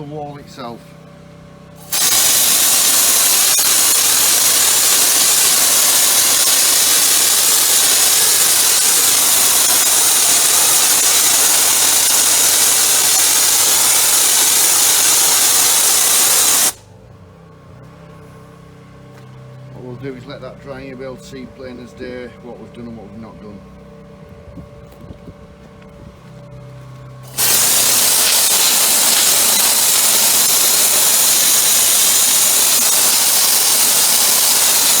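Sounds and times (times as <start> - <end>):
sandblaster hissing: 1.8 - 16.8, 27.2 - 35.0.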